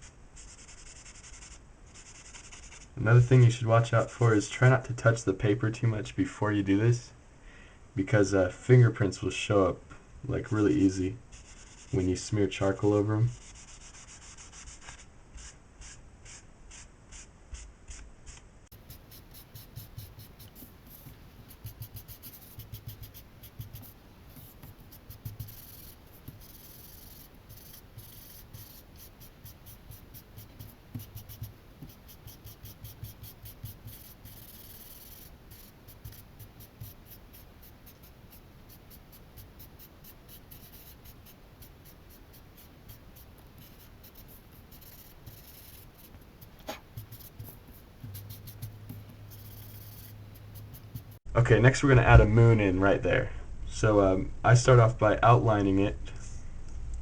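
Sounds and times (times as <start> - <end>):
charcoal rubbing on paper: 0.4 - 2.9, 13.3 - 17.2, 18.7 - 51.2.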